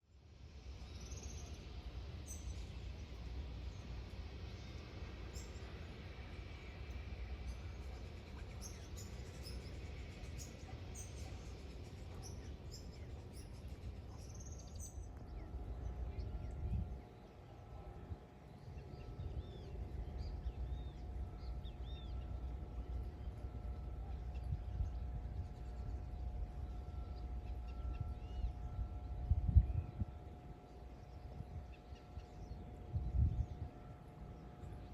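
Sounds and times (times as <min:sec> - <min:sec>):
faint steady whine: 0:00.0 - 0:34.9
wind buffeting microphone: 0:15.2 - 0:17.1, 0:27.8 - 0:33.8.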